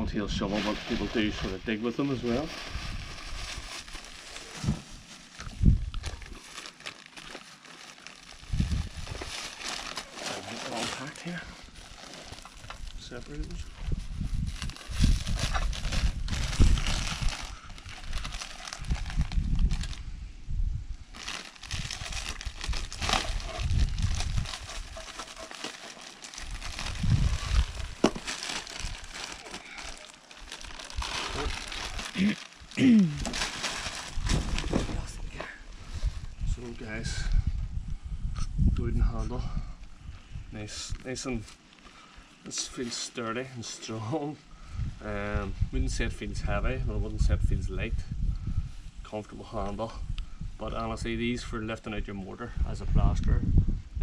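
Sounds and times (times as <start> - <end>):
packaging rustling: 2.4 - 20.0, 21.1 - 35.2.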